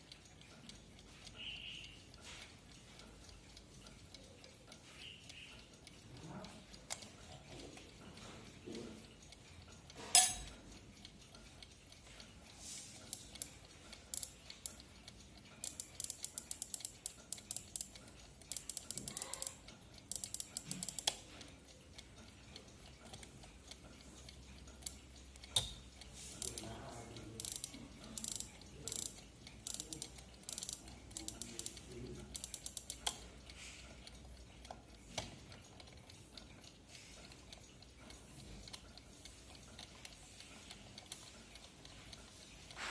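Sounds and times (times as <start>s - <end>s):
winding key ratchet clicks: 13.0s - 42.4s.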